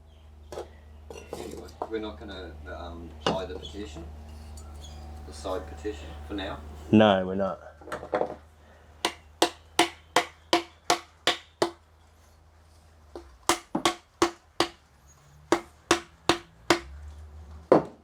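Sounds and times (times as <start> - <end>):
mallet knocking on aluminium tubing: 9.1 - 11.8, 13.5 - 14.8, 15.5 - 16.9.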